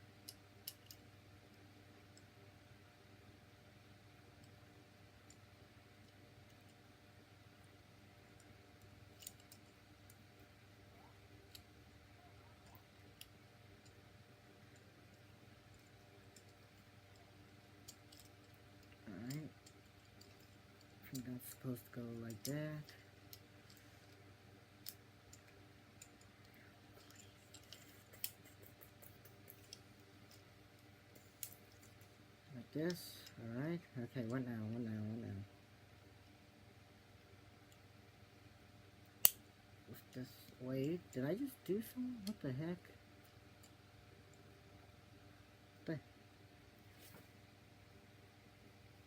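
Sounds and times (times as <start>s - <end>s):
low room hum: 0.0s - 49.0s
plastic toy parts clicking: 9.2s - 10.2s, 17.8s - 21.6s.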